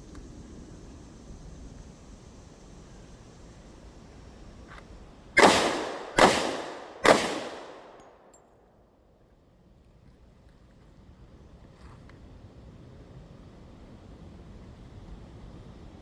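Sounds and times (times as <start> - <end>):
handgun shots echoing: 5.4 - 8.4.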